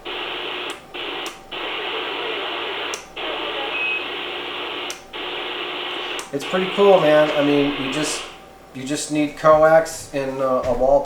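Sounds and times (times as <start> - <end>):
radio static hiss: 0.0 - 8.6.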